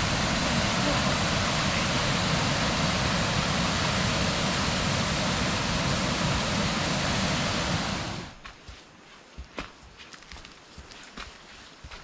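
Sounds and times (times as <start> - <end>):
waterfall rushing water: 0.0 - 8.4.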